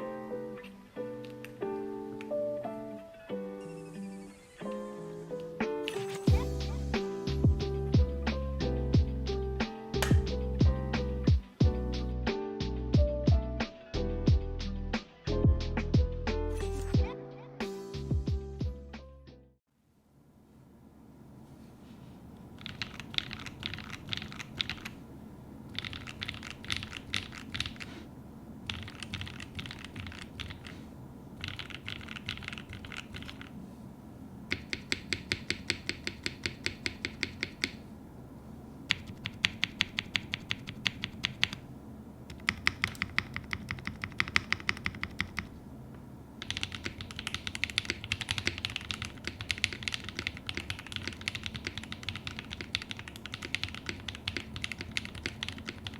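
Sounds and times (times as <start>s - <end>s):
mechanical keyboard typing: 22.6s - 25.0s, 25.7s - 27.9s, 28.7s - 30.8s, 31.4s - 33.6s, 34.5s - 37.8s, 38.9s - 41.6s, 42.3s - 45.5s, 46.4s - 55.9s.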